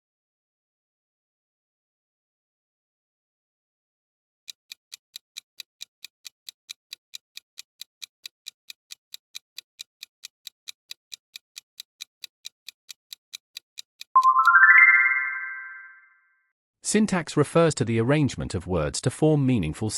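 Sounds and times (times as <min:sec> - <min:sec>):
clock ticking: 0:04.5 - 0:14.4.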